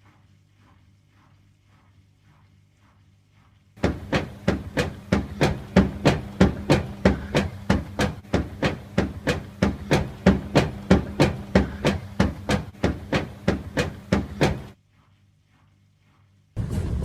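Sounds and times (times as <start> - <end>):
sharp regular knocking: 3.8 - 14.8
washing machine humming: 3.8 - 14.8.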